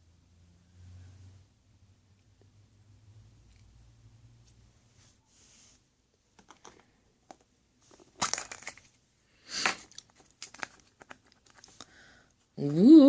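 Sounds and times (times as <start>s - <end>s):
toy packaging crinkling and tearing: 7.9s - 11.9s.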